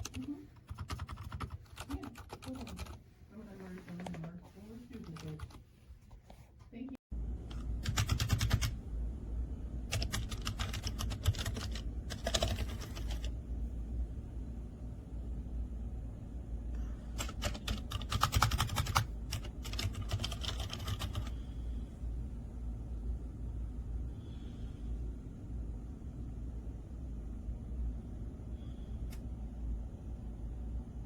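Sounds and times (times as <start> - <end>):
mechanical keyboard typing: 0.0 - 3.0, 5.0 - 5.6, 7.5 - 8.8, 9.9 - 13.3, 17.2 - 21.3.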